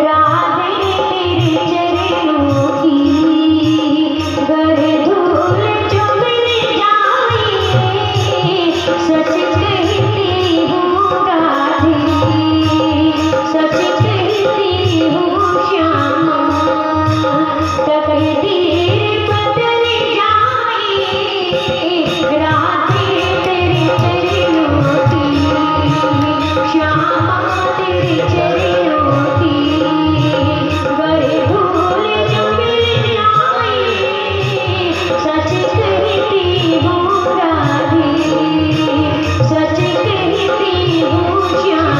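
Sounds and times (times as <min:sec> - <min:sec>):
hand drum rhythm: 0:00.3 - 0:41.9
devotional singing: 0:21.2 - 0:41.9.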